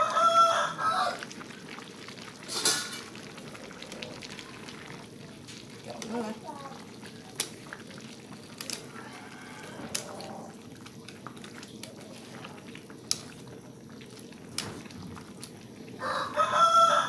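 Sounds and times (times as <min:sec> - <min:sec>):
rooster crowing: 0:00.0 - 0:01.3, 0:08.8 - 0:10.5, 0:16.0 - 0:17.0
vegetables bubbling in a pan: 0:00.0 - 0:17.0.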